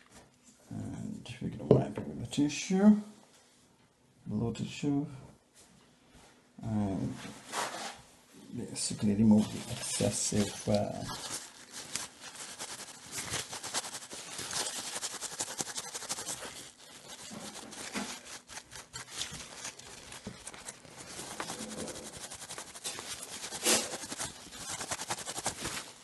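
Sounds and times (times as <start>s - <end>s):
tissue scrubbing circuit board: 9.0s - 26.0s.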